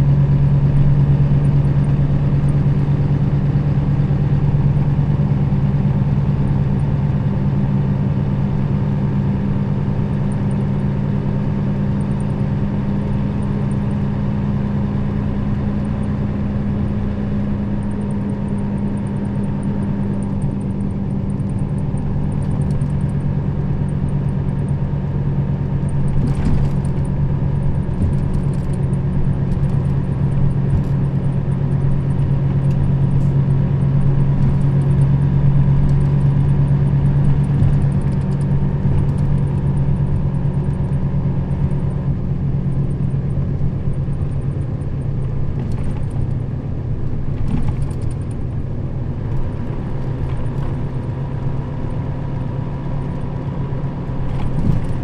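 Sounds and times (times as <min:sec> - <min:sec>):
bus diesel engine drone: 0:00.0 - 0:55.0
faint rattles and ticks: 0:17.5 - 0:53.5, 0:54.2 - 0:55.0.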